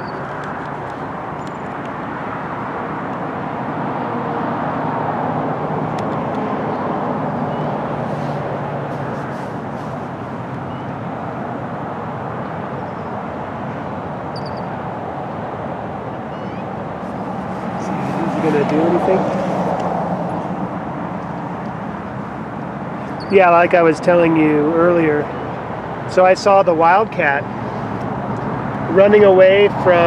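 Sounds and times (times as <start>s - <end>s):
creek water rushing: 0.0s - 30.0s
faint bird chirps: 14.3s - 14.7s, 16.3s - 16.6s.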